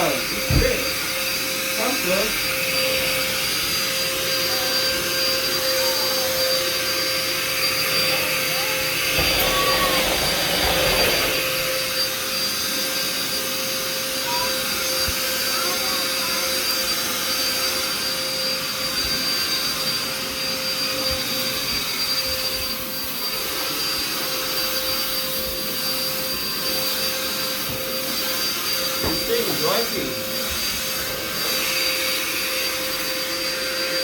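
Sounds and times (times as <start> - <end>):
vacuum cleaner running: 0.0 - 34.0.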